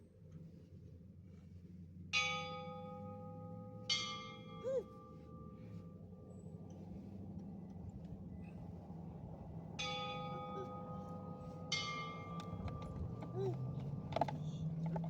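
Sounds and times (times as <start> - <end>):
church bell ringing: 2.2 - 4.6, 9.8 - 12.4.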